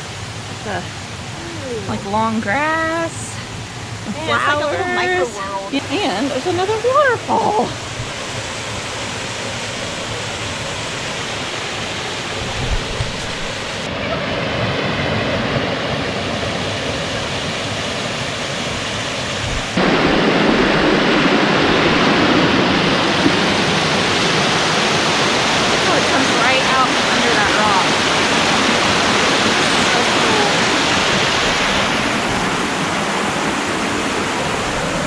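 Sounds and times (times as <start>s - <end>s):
waterfall and stream rushing: 0.0s - 35.0s.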